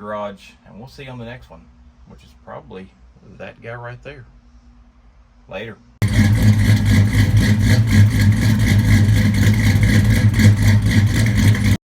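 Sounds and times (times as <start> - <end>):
engine running rhythmically: 6.0 - 11.8.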